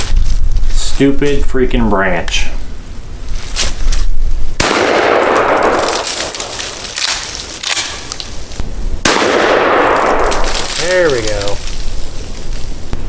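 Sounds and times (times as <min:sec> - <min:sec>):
shotgun blasts with echo: 0:04.6 - 0:06.8, 0:09.0 - 0:11.1.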